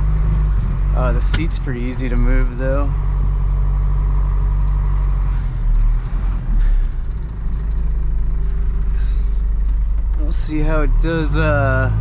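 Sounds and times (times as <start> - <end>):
road noise: 0.0 - 12.0
truck diesel engine from cab: 0.0 - 12.0.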